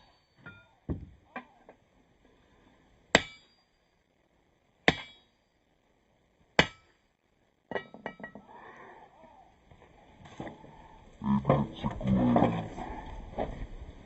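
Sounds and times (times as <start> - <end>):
hammer striking hot steel on anvil: 0.0 - 0.8, 3.1 - 3.8, 4.8 - 5.5, 6.6 - 7.0.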